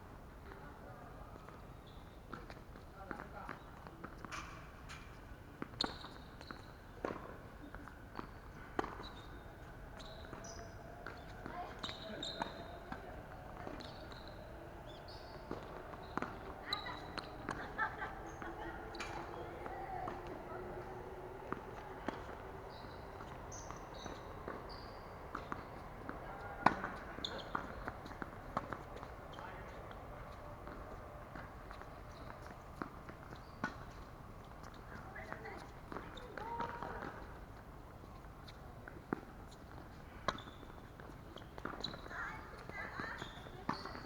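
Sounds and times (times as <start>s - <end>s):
shoes squeaking on court: 5.7s - 37.2s, 38.1s - 44.0s
tennis ball hitting court: 8.2s - 9.2s, 10.0s - 37.4s, 38.4s - 42.1s, 42.8s - 44.0s
tennis racket hitting ball: 12.9s - 20.9s.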